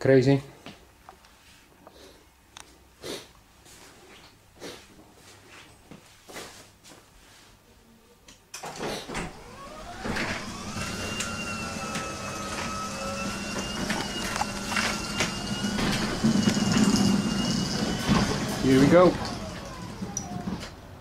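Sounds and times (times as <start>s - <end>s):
garage door motor whine: 8.6s - 21.0s.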